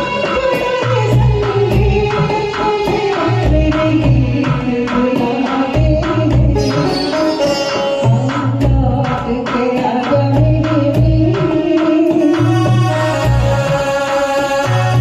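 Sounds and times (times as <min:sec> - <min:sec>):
repeating drum rhythm: 0:00.0 - 0:15.0
wavering melody line: 0:06.6 - 0:08.6.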